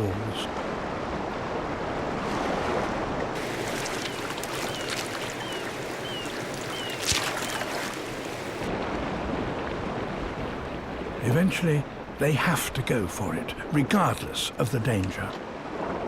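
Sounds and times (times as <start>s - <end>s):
sharp splash: 3.4s - 8.7s
waterfall rushing: 3.4s - 8.7s.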